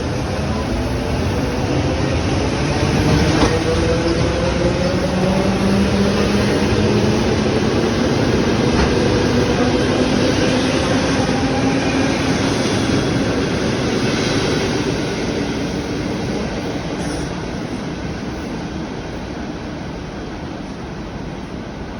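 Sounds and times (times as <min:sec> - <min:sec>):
electric train hum: 0:00.0 - 0:21.9
wheel-on-rail noise: 0:00.1 - 0:12.8.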